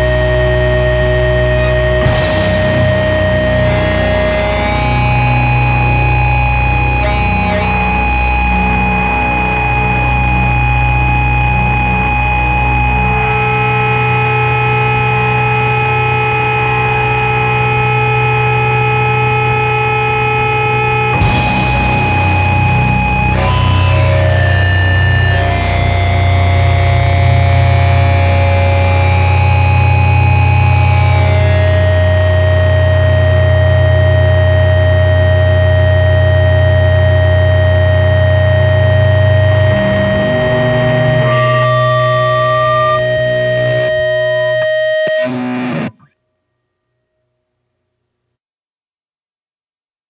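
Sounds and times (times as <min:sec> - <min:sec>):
distorted guitar and bass drone: 0:00.0 - 0:46.1
guitar feedback tones: 0:00.0 - 0:46.2
noise drone hiss: 0:20.8 - 0:23.5.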